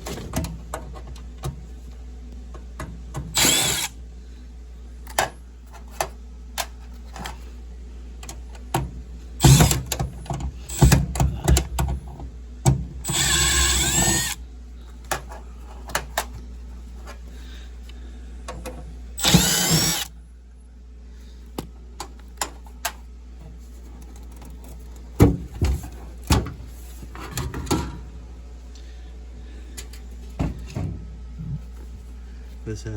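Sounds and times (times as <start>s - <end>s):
steady low hum: 0.0s - 32.9s
power drill whining: 3.3s - 4.0s, 9.4s - 9.9s, 10.7s - 10.9s, 13.0s - 14.4s, 19.2s - 20.1s.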